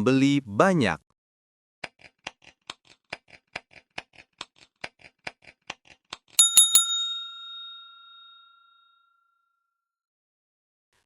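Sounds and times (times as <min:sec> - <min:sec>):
bright bell ringing: 0:06.4 - 0:09.1.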